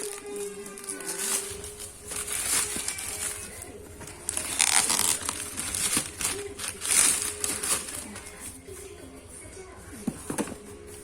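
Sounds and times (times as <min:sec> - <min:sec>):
packaging crinkling and tearing: 0:00.0 - 0:08.4.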